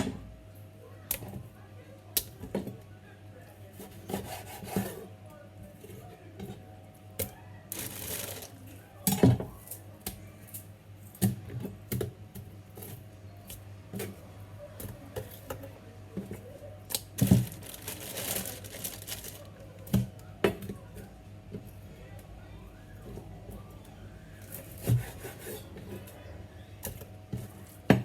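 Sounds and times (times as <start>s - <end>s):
rustling: 7.7s - 8.6s, 17.2s - 19.5s.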